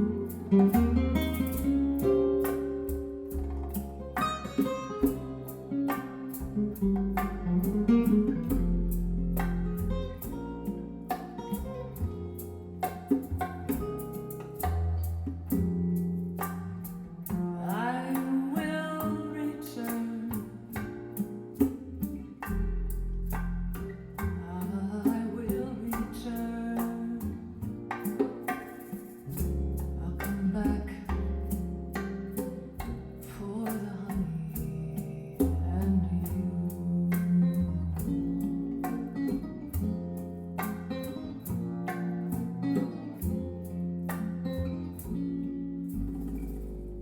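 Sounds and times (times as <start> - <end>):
deep bass notes: 0.0 - 17.7, 21.8 - 27.6, 34.2 - 47.0
ticking percussion: 0.0 - 46.9
plucked guitar: 0.0 - 47.0.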